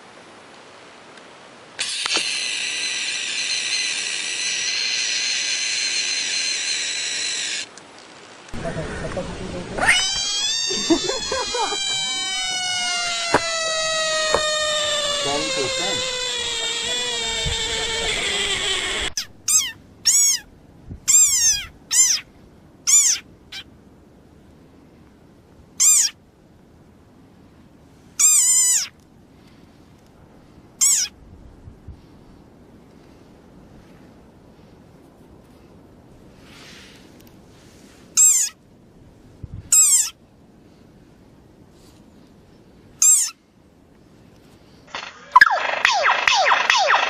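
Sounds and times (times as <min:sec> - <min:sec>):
loud high-pitched hiss: 0:01.8 - 0:07.7, 0:09.8 - 0:19.2
high-pitched meow-like animal calls: 0:09.8 - 0:20.5.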